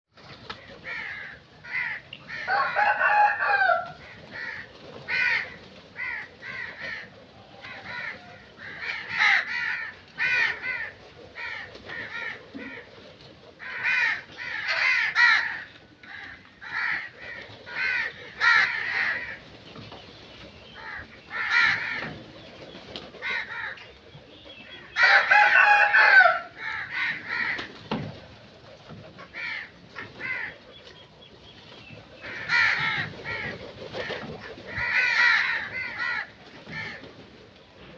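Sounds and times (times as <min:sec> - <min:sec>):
crows cawing: 0:00.7 - 0:12.9, 0:13.6 - 0:19.4, 0:20.8 - 0:22.2, 0:23.2 - 0:23.9, 0:24.9 - 0:27.8, 0:29.2 - 0:30.6, 0:32.3 - 0:37.0.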